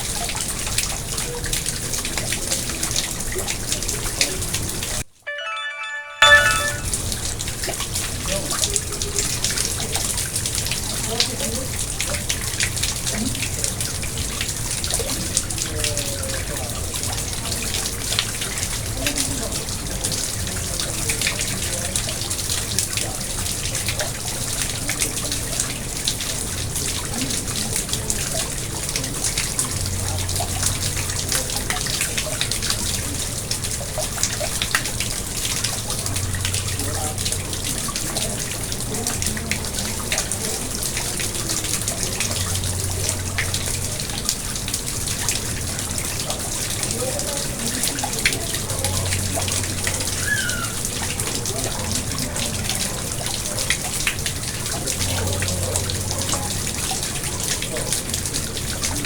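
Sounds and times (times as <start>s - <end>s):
pond water trickling and splashing: 30.0s - 59.0s.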